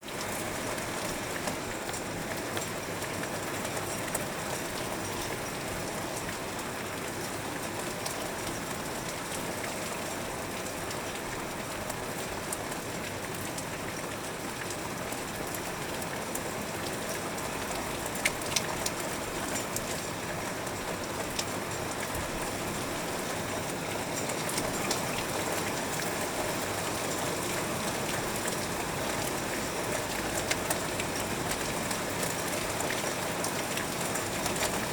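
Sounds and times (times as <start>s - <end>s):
raindrops pattering on a window: 0.1s - 34.9s
heavy rain falling: 14.0s - 34.9s.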